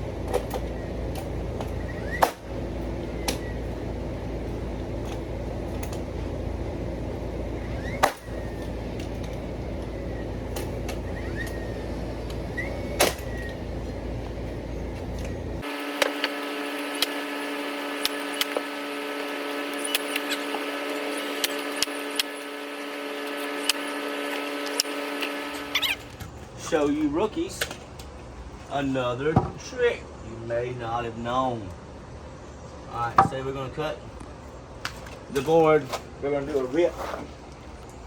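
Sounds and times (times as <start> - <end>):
deep rumble: 0.0 - 15.6
machine hum with steady tones: 0.0 - 35.3.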